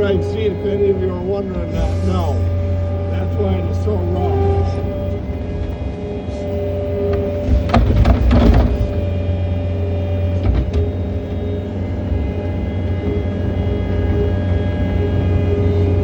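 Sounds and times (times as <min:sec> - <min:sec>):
skid steer engine running: 0:00.0 - 0:16.0
clattering knocks: 0:07.1 - 0:09.2, 0:10.4 - 0:11.0.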